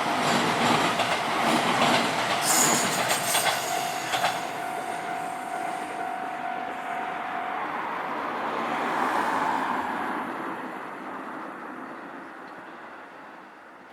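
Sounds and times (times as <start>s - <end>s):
train wheels clicking over rail joints: 0.0s - 5.6s
steady high tone: 2.2s - 8.5s.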